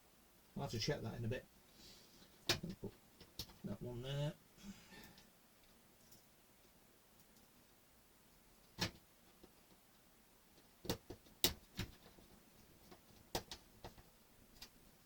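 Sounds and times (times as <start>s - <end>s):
small parts clicking and tapping: 5.0s - 7.6s.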